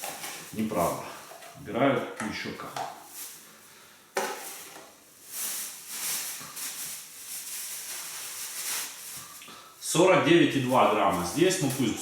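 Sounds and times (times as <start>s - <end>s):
rustling and scraping: 0.0s - 1.6s, 4.2s - 9.4s, 10.5s - 12.0s.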